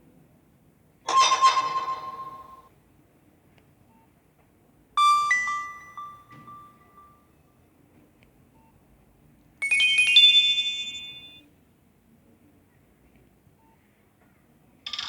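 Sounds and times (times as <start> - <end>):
mobile phone chime: 5.0 - 7.2, 9.6 - 11.4.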